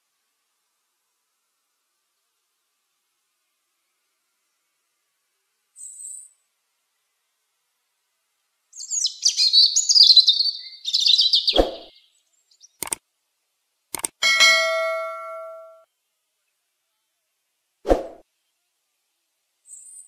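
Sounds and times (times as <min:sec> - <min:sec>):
songbird twittering: 0:08.7 - 0:13.0
sharp clicks: 0:12.8 - 0:13.0, 0:13.9 - 0:14.2
metallic ding: 0:14.2 - 0:15.8.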